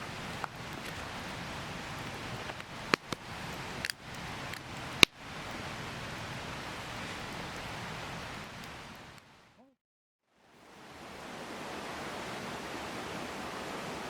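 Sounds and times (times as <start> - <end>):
fire snapping: 0.0 - 9.4
campfire crackling: 0.0 - 9.6.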